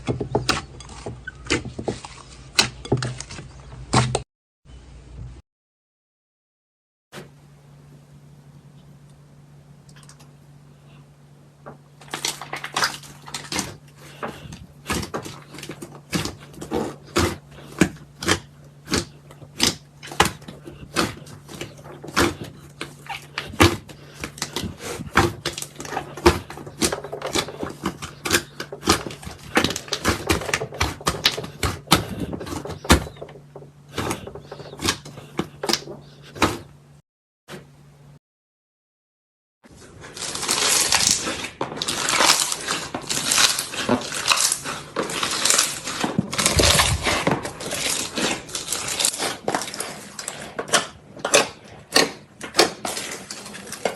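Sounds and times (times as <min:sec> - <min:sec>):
steady low hum: 0:07.2 - 0:37.0.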